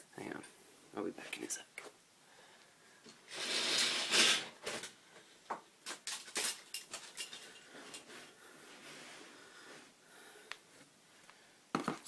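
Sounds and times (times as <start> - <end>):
small hard objects clattering: 5.8 - 8.1.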